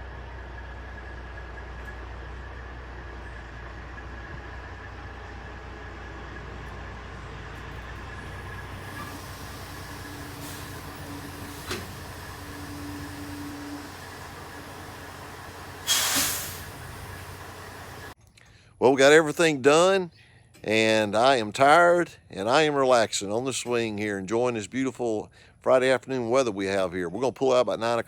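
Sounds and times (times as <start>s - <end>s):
low engine rumble: 0.0s - 18.2s.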